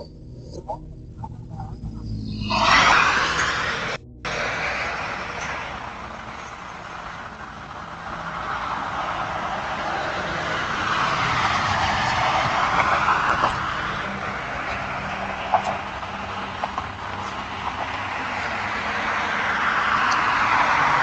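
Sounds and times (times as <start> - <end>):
passing vehicle rushing: 2.0 - 21.0.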